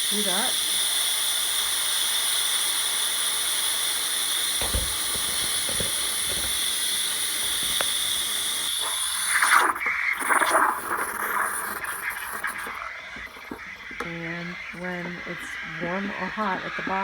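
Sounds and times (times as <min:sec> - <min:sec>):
rough steam bursts: 0:00.0 - 0:13.4
steam wand hissing: 0:00.0 - 0:17.0
dull knocks: 0:04.6 - 0:06.6.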